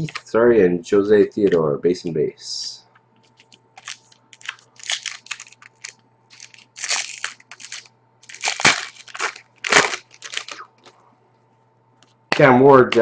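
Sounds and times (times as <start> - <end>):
cards being handled: 3.2 - 11.0
wrapper tearing and crinkling: 3.8 - 10.9.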